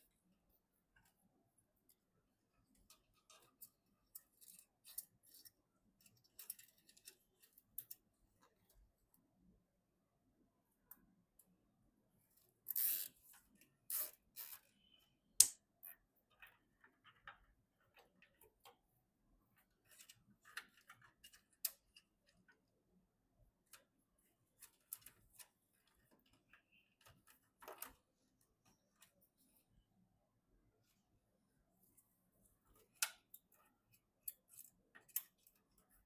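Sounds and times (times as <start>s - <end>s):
small plastic and metal clicks: 32.8s - 35.9s.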